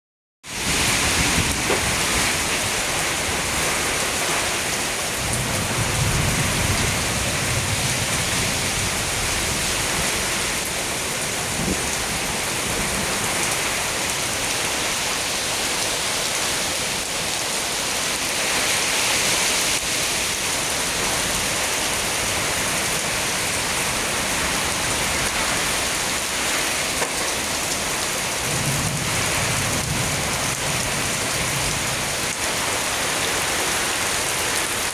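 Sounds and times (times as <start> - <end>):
heavy rain: 0.4 - 34.9.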